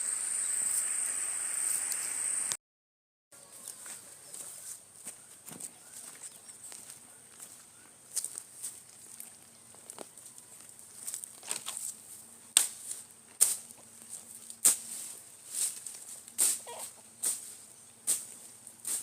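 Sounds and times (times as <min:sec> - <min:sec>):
faint high hiss: 0:00.0 - 0:02.6
footsteps walking: 0:03.5 - 0:19.0.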